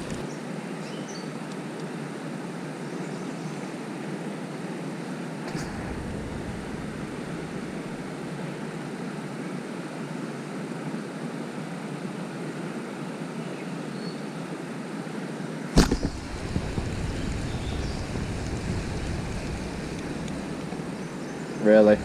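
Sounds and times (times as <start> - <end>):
wind rumble on microphone: 5.5 - 9.0, 15.8 - 22.0
sharp knock: 15.8 - 16.9
water rushing through spillway: 15.8 - 22.0.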